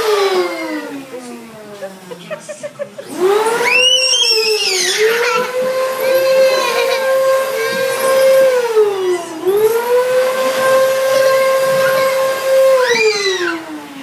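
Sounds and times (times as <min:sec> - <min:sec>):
vacuum cleaner motor whine: 0:00.0 - 0:14.0
rising and falling high sound: 0:03.0 - 0:13.8.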